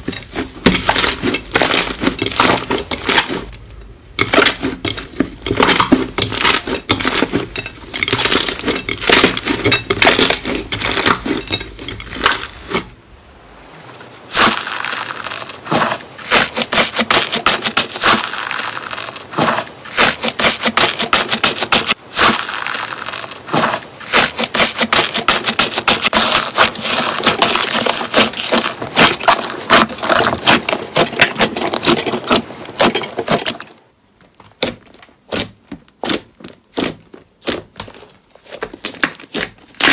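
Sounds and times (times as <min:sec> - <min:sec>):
crunchy slime crackling: 0:04.2 - 0:12.8, 0:14.3 - 0:33.7.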